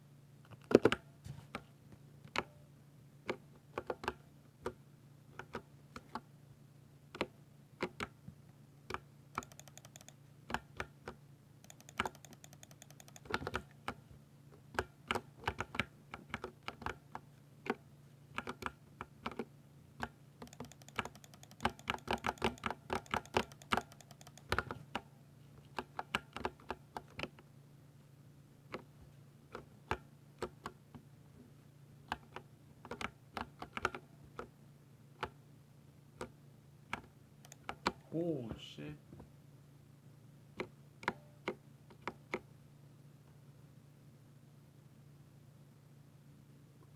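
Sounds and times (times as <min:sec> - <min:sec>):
faint steady hum: 0:00.0 - 0:46.9
typing on mechanical keyboard: 0:08.9 - 0:11.0, 0:11.6 - 0:14.0, 0:20.4 - 0:24.8, 0:37.0 - 0:38.0.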